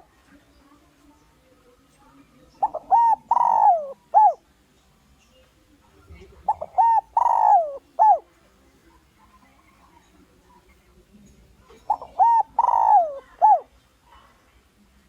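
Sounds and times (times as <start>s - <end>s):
dove cooing: 2.6s - 4.4s, 6.2s - 8.3s, 11.8s - 13.7s.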